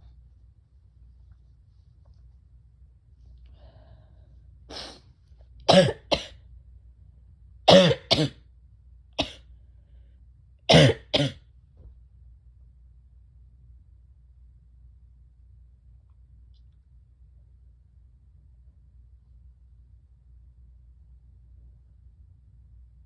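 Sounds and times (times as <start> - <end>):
person coughing: 5.7 - 6.4, 7.7 - 8.4, 9.2 - 9.5, 10.7 - 11.4.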